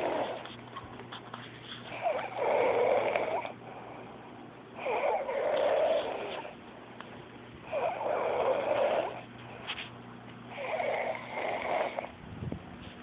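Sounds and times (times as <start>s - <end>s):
man snoring: 2.0s - 3.6s, 4.8s - 6.5s, 7.7s - 9.2s, 10.5s - 12.1s.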